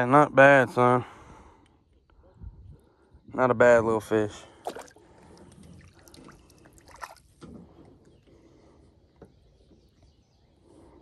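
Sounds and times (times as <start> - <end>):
water trickling and dripping: 4.7 - 7.4.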